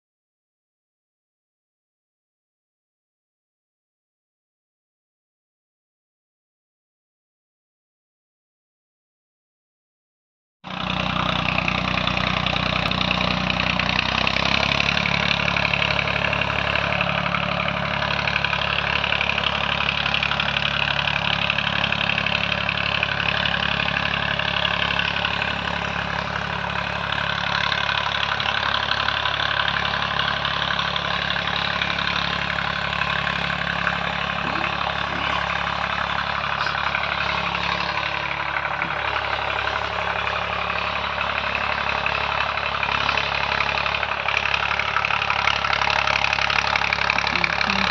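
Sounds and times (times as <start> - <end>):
tractor diesel engine running: 10.7 - 47.9.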